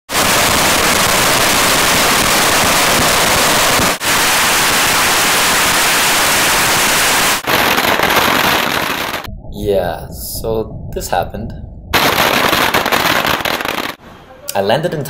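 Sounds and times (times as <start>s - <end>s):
fireworks and firecrackers roaring: 0.1s - 9.3s, 12.0s - 14.0s.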